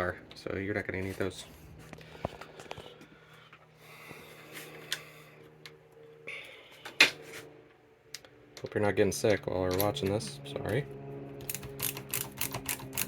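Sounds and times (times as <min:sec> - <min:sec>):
small parts clicking: 0:11.5 - 0:13.0.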